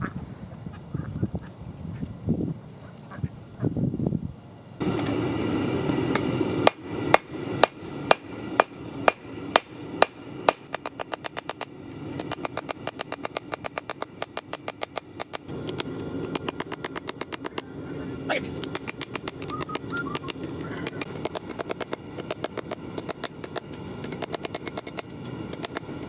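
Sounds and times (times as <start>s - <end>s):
steady rushing noise: 1.5s - 26.0s
hammer striking steel on anvil: 6.1s - 15.5s.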